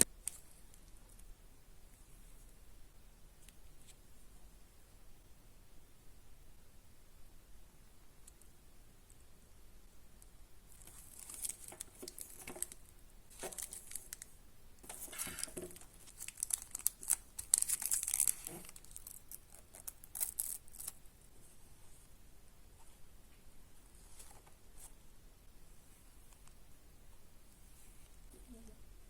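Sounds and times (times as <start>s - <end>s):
packaging tearing and crinkling: 10.8s - 14.3s, 14.9s - 21.0s.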